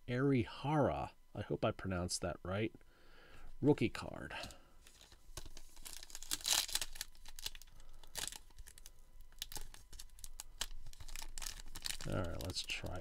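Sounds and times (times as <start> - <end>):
wrapper crinkling and tearing: 4.8 - 13.0.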